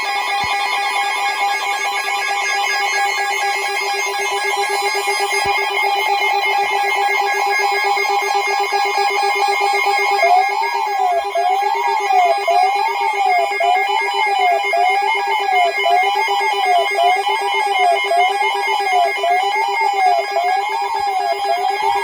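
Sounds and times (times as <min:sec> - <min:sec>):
warbling electronic alert siren: 0:09.4 - 0:22.0.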